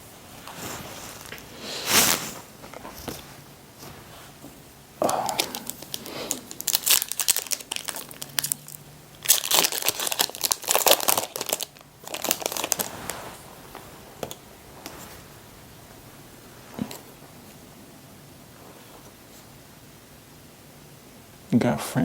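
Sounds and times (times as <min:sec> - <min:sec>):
foil wrapper crinkling: 0:05.0 - 0:13.2.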